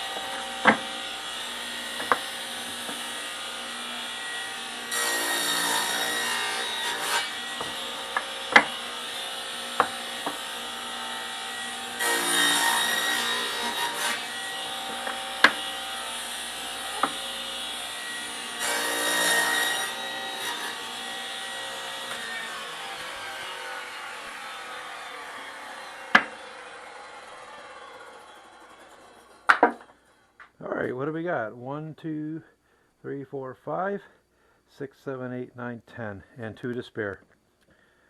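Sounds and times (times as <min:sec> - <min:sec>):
table saw cutting wood: 0:00.0 - 0:29.9
sharp knocks: 0:00.2 - 0:01.0, 0:02.0 - 0:03.0, 0:07.6 - 0:08.8, 0:09.8 - 0:10.5, 0:14.8 - 0:15.7, 0:17.0 - 0:17.2, 0:29.5 - 0:29.9.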